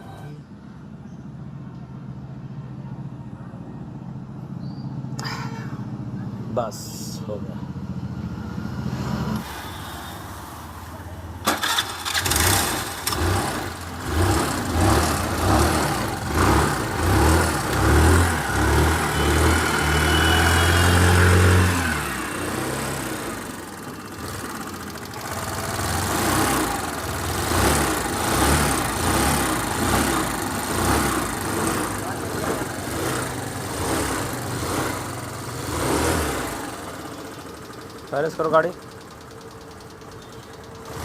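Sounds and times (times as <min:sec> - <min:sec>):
scooter engine running in bursts: 0:11.4 - 0:41.0.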